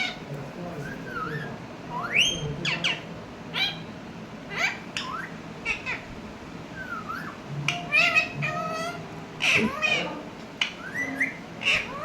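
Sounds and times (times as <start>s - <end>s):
parrot squawking: 0.0s - 0.3s, 1.1s - 3.9s, 4.5s - 6.1s, 6.7s - 12.0s.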